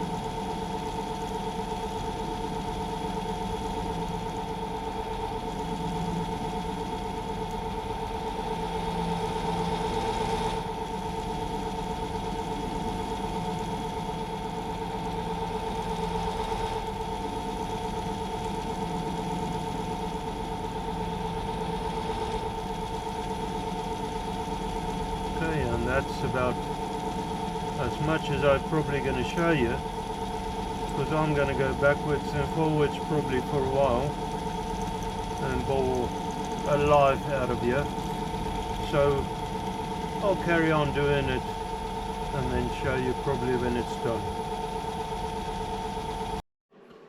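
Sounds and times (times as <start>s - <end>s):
lathe motor humming: 0.0s - 46.4s
cutter milling steel: 25.6s - 26.8s, 27.6s - 29.9s, 30.6s - 39.4s.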